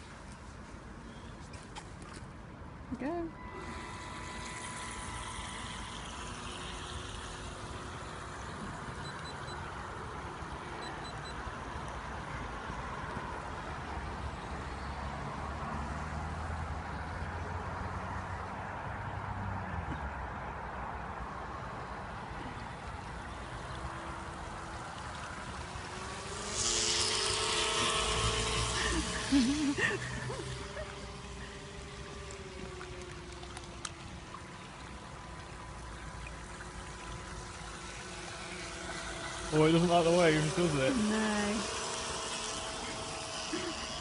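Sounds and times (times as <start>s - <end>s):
rc boat motors whirring: 0.0s - 44.0s
water jets hissing: 22.6s - 44.0s.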